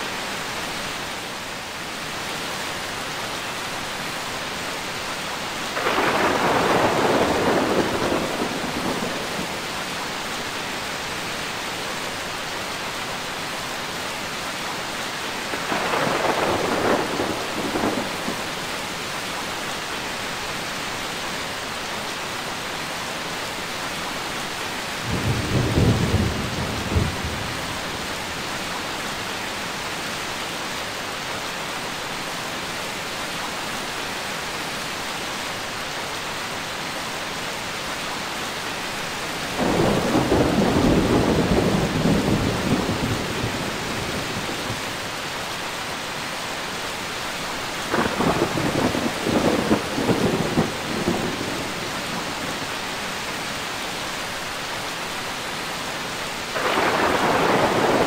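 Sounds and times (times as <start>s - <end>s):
steady rain: 0.0s - 58.0s
thunder rumbling: 5.8s - 9.6s, 15.5s - 18.5s, 25.1s - 28.0s, 39.6s - 44.9s, 47.9s - 52.5s, 56.6s - 58.0s.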